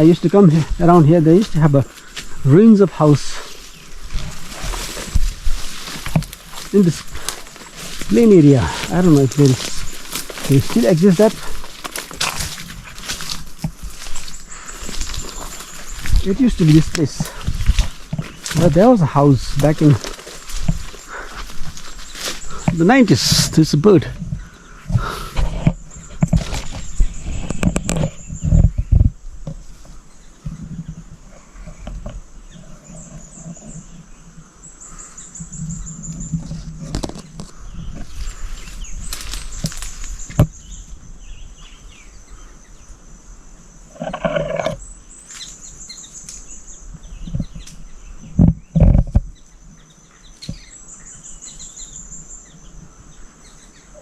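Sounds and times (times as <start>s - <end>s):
steady high hiss: 0.0s - 26.1s
wild birds trilling: 0.0s - 54.0s.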